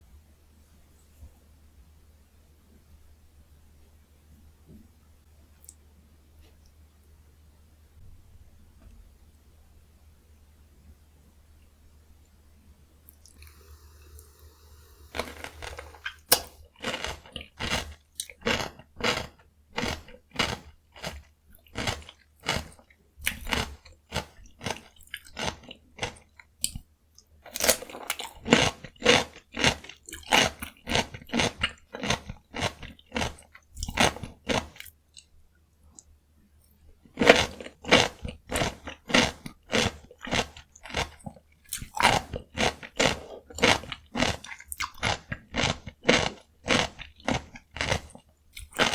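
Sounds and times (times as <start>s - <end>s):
crunching and chewing cucumber: 15.1s - 35.3s, 37.0s - 48.9s.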